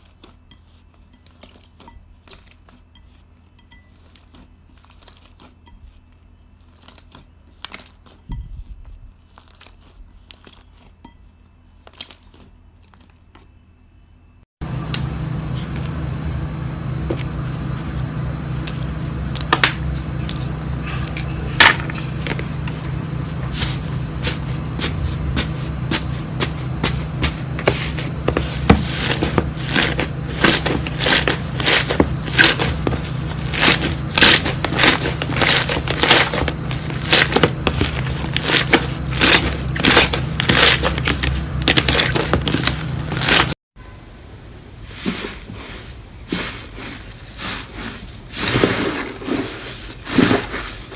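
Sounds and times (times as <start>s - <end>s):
steady low hum: 13.6s - 48.3s.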